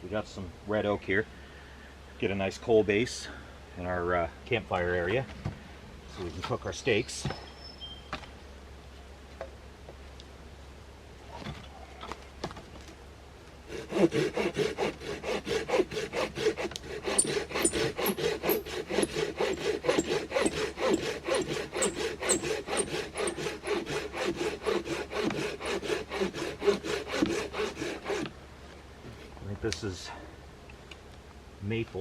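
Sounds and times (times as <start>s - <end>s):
hand saw cutting log: 13.7s - 28.3s.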